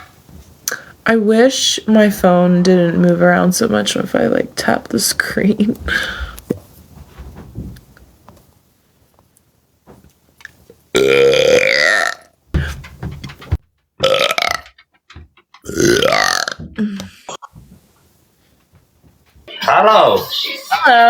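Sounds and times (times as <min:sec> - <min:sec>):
woman burping: 0:11.0 - 0:12.2, 0:14.0 - 0:14.6, 0:15.7 - 0:17.6.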